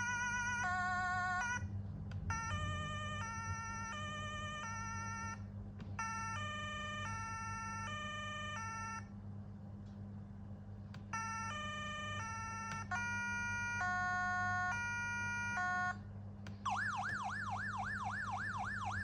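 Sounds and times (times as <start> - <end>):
two-tone electronic siren: 0.0 - 1.7, 2.3 - 9.2, 11.1 - 16.0, 16.6 - 19.0
steady low hum: 0.0 - 19.0
warbling two-note siren: 2.3 - 5.4, 11.2 - 16.0, 16.7 - 19.0.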